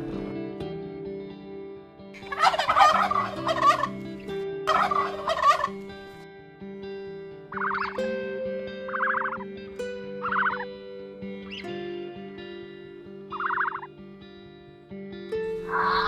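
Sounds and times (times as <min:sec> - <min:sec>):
background music: 0:00.0 - 0:16.0
fowl warbling calls: 0:02.2 - 0:04.0, 0:04.7 - 0:05.9, 0:07.5 - 0:08.0, 0:08.9 - 0:09.4, 0:10.2 - 0:10.7, 0:13.3 - 0:13.9, 0:15.6 - 0:16.0.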